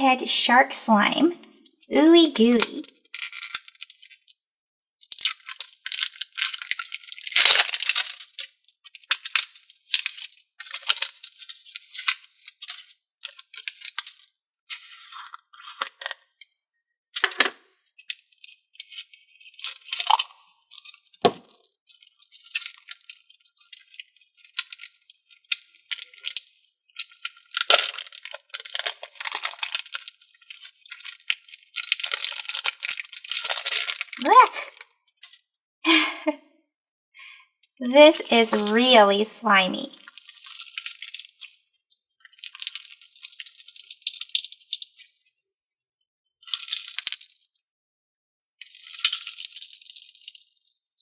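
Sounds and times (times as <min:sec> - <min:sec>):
slime squelching and popping: 0:05.0 - 0:08.4, 0:18.2 - 0:21.3, 0:22.0 - 0:35.2, 0:42.3 - 0:44.9.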